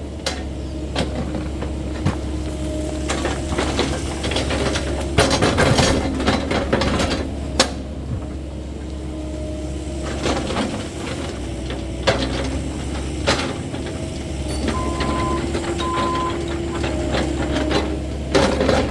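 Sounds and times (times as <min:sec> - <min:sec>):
diesel engine running: 0:00.0 - 0:18.9.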